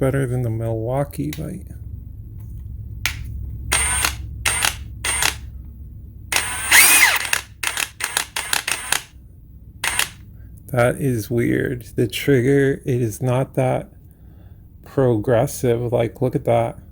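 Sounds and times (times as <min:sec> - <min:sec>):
impact wrench spinning: 0:03.7 - 0:05.5, 0:06.3 - 0:09.1, 0:09.8 - 0:10.2.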